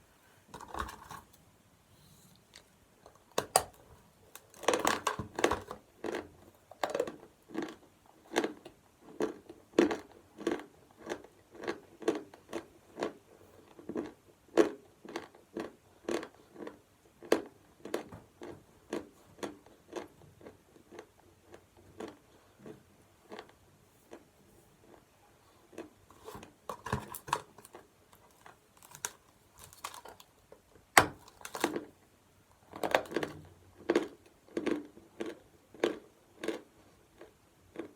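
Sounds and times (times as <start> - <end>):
chalk crunching and chewing: 6.0 - 30.3, 33.0 - 37.9.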